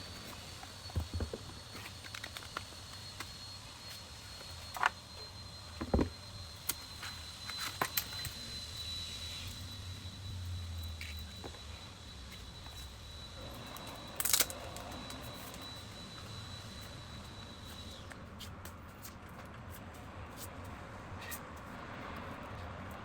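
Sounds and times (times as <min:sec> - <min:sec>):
low hum: 0:00.0 - 0:18.3.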